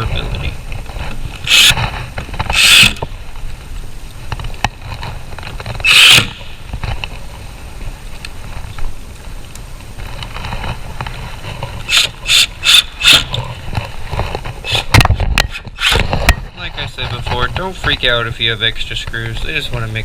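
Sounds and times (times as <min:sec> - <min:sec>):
power screwdriver driving screws: 0:01.4 - 0:01.8, 0:02.5 - 0:03.0, 0:11.9 - 0:13.3.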